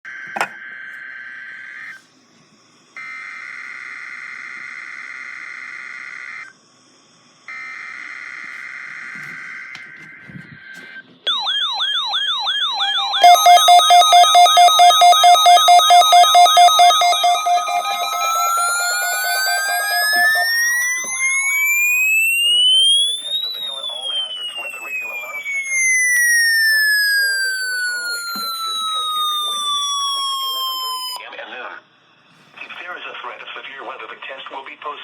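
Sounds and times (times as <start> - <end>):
buzzy digital data tones: 11.3 - 31.2
pulsing alert tone: 11.3 - 31.2
sweeping siren-like tone: 11.3 - 31.2.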